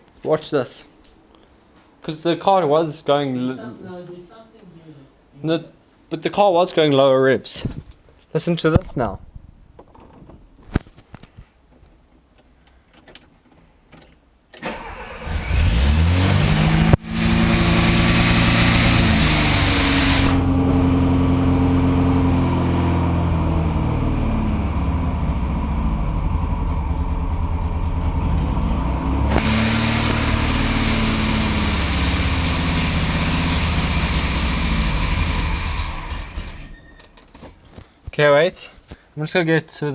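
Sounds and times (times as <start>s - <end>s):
car engine starting and revving: 14.6s - 36.7s.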